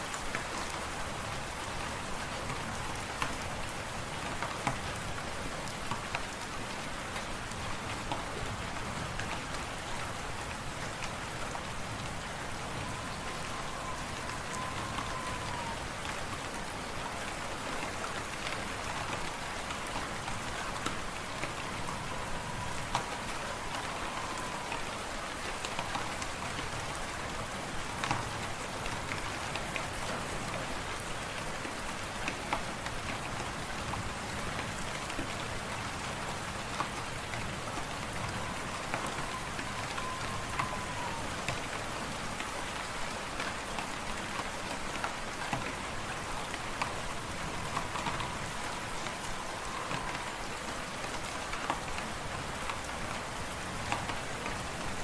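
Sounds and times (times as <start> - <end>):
faint wavering whistle: 12.3 - 16.7, 19.8 - 25.9, 38.0 - 41.7, 46.9 - 50.8.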